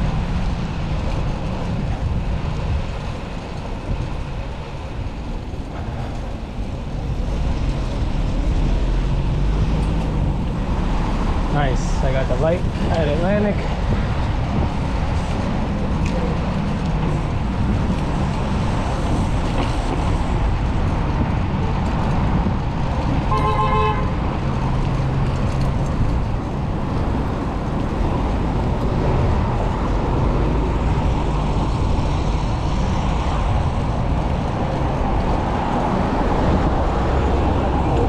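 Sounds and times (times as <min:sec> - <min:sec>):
street traffic rumble: 0:00.0 - 0:38.0
car horn toot: 0:23.3 - 0:24.1.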